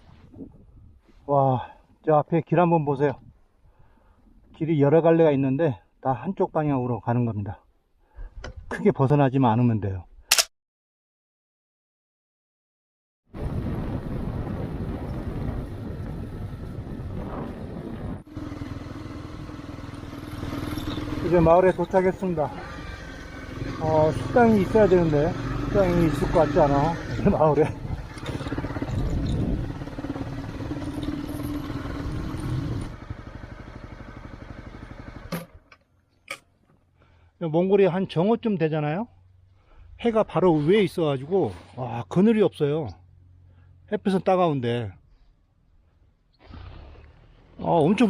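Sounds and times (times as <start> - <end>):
wind on microphone: 13.4 - 18.3, 27.7 - 30.0
motorcycle engine running: 16.3 - 35.7.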